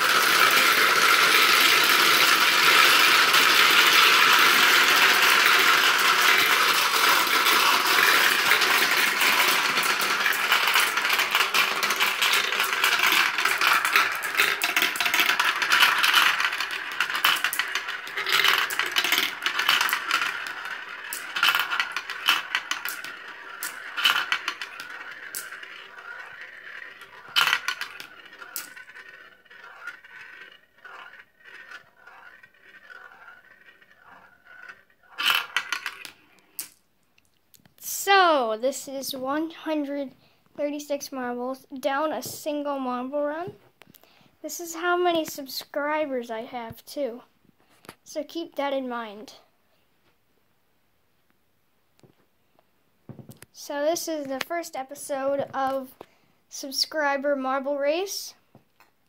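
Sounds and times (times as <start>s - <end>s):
marbles rolling down a marble run: 0.0s - 36.8s, 53.3s - 58.4s.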